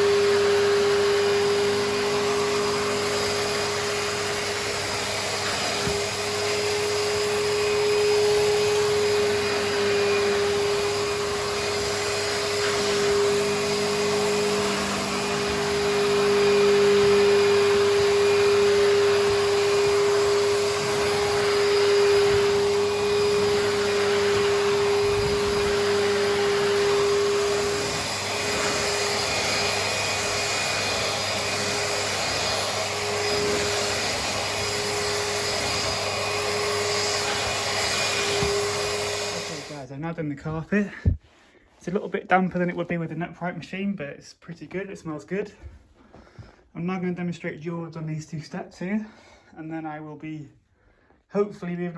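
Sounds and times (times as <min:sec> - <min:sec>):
vacuum motor whine: 0:00.0 - 0:39.8
vacuum suction rushing: 0:00.0 - 0:39.9.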